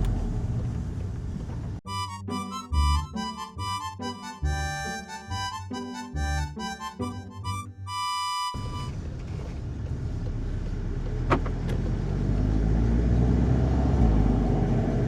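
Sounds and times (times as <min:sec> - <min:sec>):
car engine running: 0:00.0 - 0:01.9, 0:07.9 - 0:14.6
background music: 0:01.9 - 0:09.0
tyre rumble: 0:08.5 - 0:13.0.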